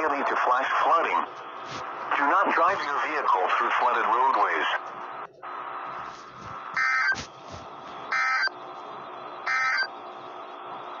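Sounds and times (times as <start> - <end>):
radio hiss: 0.0 - 11.0
harsh buzzing data bursts: 6.6 - 7.2, 8.1 - 8.6, 9.4 - 10.0.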